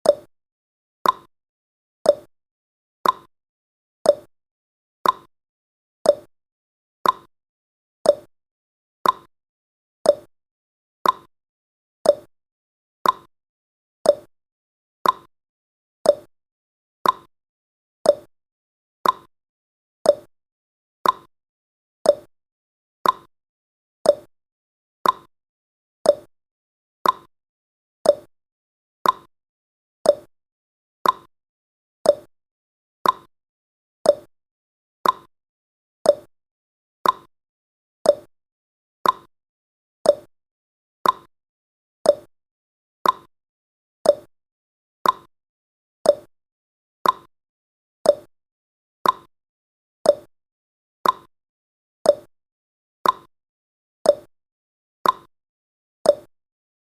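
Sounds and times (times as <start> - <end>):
timer ticking: 0.0 - 0.3, 1.0 - 1.3, 2.1 - 2.3, 3.0 - 3.3, 4.1 - 4.3, 5.0 - 5.3, 6.1 - 6.3, 7.0 - 7.3, 8.1 - 8.3, 9.0 - 9.3, 10.1 - 10.3, 11.0 - 11.3, 12.1 - 12.3, 13.0 - 13.3, 14.1 - 14.3, 15.0 - 15.3, 16.1 - 16.3, 17.0 - 17.3, 18.1 - 18.3, 19.0 - 19.3, 20.1 - 20.3, 21.0 - 21.3, 22.1 - 22.3, 23.0 - 23.3, 24.1 - 24.3, 25.0 - 25.3, 26.0 - 26.3, 27.0 - 27.3, 28.0 - 28.3, 29.0 - 29.3, 30.0 - 30.3, 31.0 - 31.3, 32.1 - 32.3, 33.0 - 33.3, 34.0 - 34.3, 35.0 - 35.3, 36.0 - 36.3, 37.0 - 37.3, 38.0 - 38.3, 39.0 - 39.3, 40.0 - 40.3, 41.0 - 41.3, 42.0 - 42.3, 43.0 - 43.3, 44.0 - 44.3, 45.0 - 45.3, 46.1 - 46.3, 47.0 - 47.3, 48.1 - 48.3, 49.0 - 49.3, 50.1 - 50.3, 51.0 - 51.3, 52.1 - 52.3, 53.0 - 53.3, 54.1 - 54.3, 55.0 - 55.3, 56.1 - 56.3.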